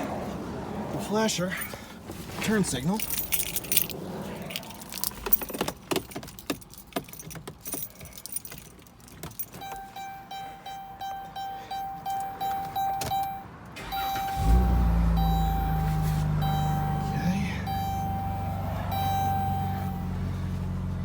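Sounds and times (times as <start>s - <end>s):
car engine starting and running: 0.0s - 21.0s
car keys jangling: 2.5s - 20.4s
dashboard warning chime: 9.3s - 20.5s.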